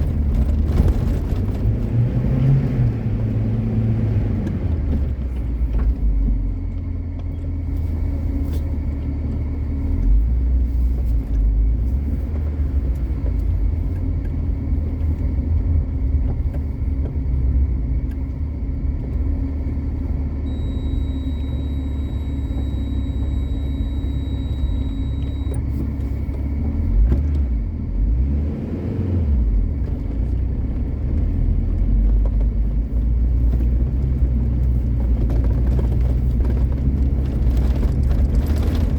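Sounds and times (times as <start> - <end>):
car engine drone: 0.0 - 38.9
low road rumble: 0.0 - 38.9
faint high whine: 19.6 - 26.2.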